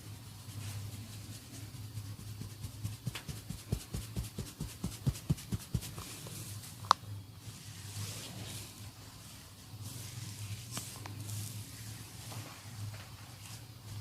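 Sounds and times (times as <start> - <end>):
steady low hum: 0.0 - 14.0
hands patting on head: 2.2 - 6.1.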